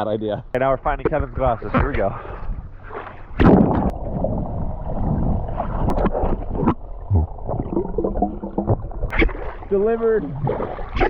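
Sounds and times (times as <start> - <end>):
water splashing and gurgling: 2.8 - 11.0.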